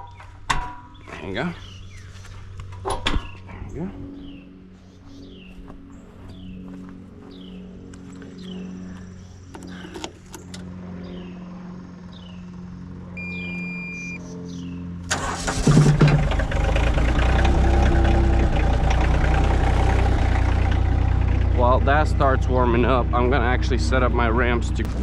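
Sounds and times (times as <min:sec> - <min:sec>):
bird chirping: 0:00.0 - 0:12.6, 0:13.2 - 0:14.9
engine cranking and idling: 0:15.1 - 0:25.0.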